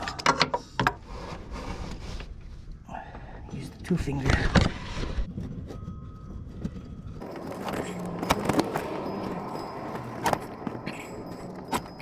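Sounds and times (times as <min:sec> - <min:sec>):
metal hand tools clinking: 0:07.2 - 0:12.0.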